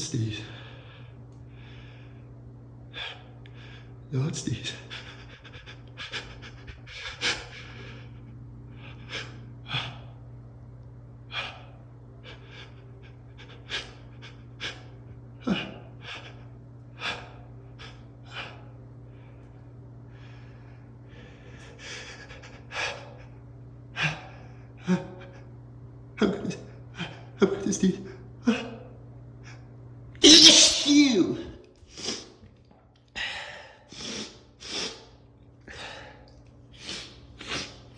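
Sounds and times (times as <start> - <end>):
man gasping: 30.2 - 31.2.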